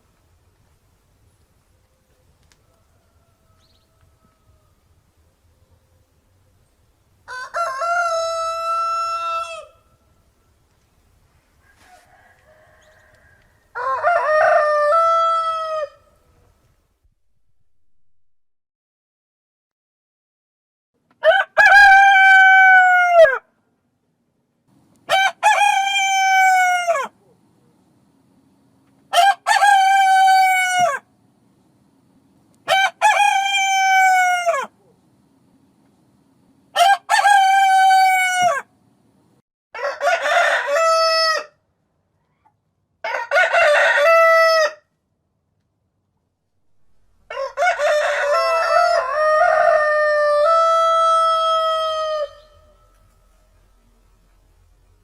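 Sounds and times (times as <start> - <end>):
rooster crowing: 2.5 - 5.0, 7.2 - 10.2, 11.6 - 16.3, 21.2 - 23.5, 25.1 - 27.2, 29.1 - 31.1, 32.7 - 34.8, 36.8 - 38.7, 39.8 - 41.6, 43.0 - 44.9, 47.2 - 53.8.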